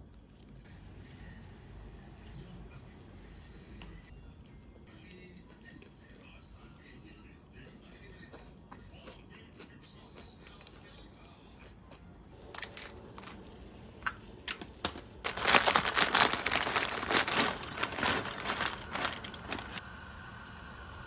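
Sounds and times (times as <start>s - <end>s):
plastic packaging crinkling: 12.4s - 19.8s.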